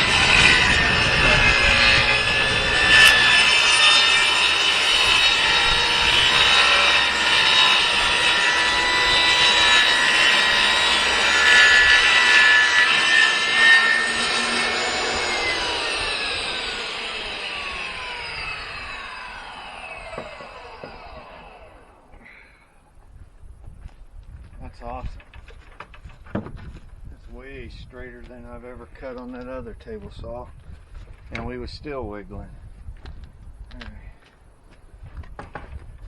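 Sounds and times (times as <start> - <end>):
table saw cutting plywood: 0.0 - 22.1.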